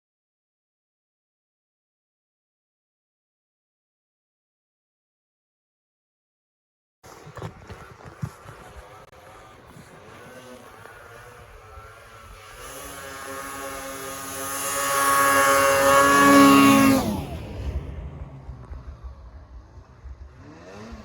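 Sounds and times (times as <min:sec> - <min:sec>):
snowmobile engine passing by: 0:07.0 - 0:21.0.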